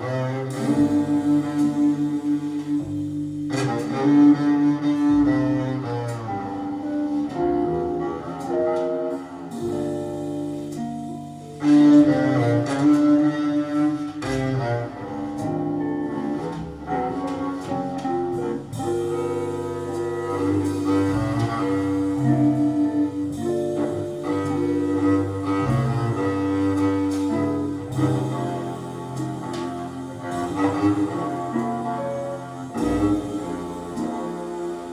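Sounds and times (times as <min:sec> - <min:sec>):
recorded music through amplifier: 0:12.4 - 0:34.9.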